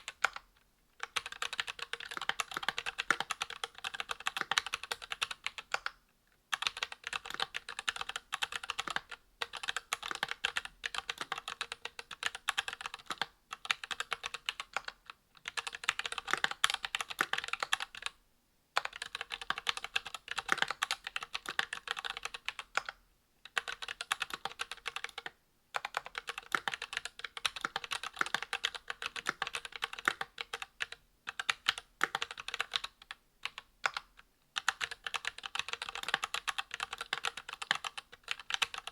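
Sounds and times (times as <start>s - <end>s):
mechanical keyboard typing: 0.0s - 0.4s, 1.0s - 18.2s, 18.8s - 38.9s.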